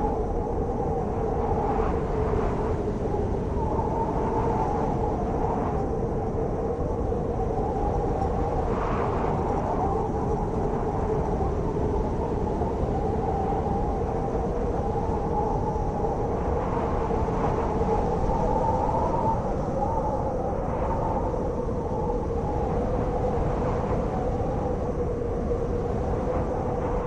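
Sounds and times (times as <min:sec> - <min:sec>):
blizzard wind moaning: 0:00.0 - 0:27.0.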